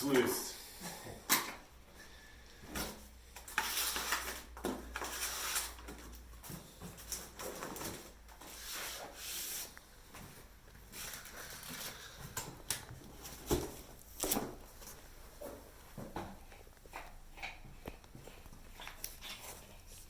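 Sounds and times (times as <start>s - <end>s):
packaging rustling and scraping: 2.7s - 9.8s, 10.4s - 12.4s, 16.5s - 20.0s.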